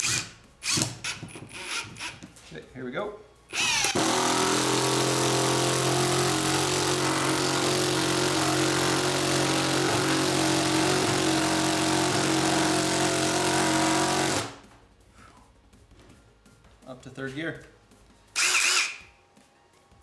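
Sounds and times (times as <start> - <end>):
impact driver hammering: 3.5 - 14.6.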